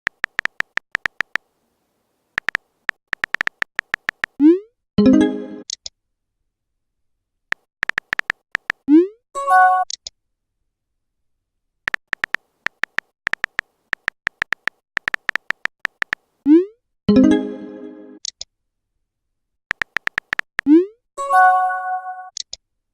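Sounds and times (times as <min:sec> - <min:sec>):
keyboard taps: 0:00.1 - 0:01.4, 0:02.4 - 0:04.4, 0:07.5 - 0:08.8, 0:11.9 - 0:16.2, 0:19.7 - 0:20.7.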